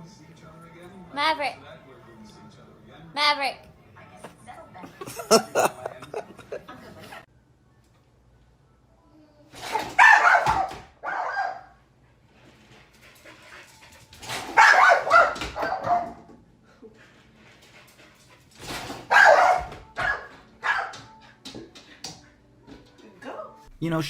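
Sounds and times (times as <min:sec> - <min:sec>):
dog barking: 0:09.7 - 0:11.8, 0:14.3 - 0:16.3, 0:19.0 - 0:21.2.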